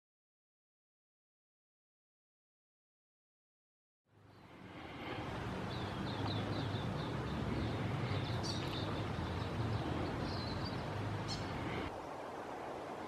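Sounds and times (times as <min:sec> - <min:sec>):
low background rumble: 0:04.1 - 0:11.9
small bird chirping: 0:05.7 - 0:11.9.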